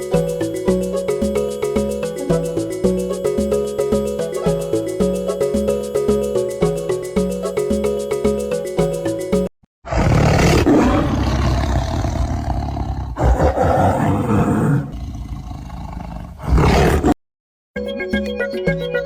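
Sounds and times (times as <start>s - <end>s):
background music: 0.0s - 9.5s, 17.8s - 19.0s
wild animal roaring: 9.8s - 17.2s.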